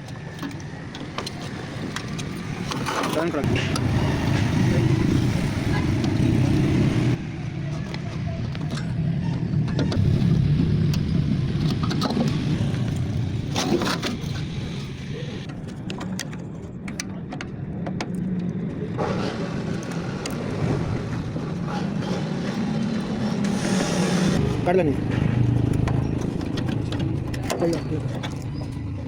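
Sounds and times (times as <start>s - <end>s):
low traffic rumble: 0.0s - 29.0s.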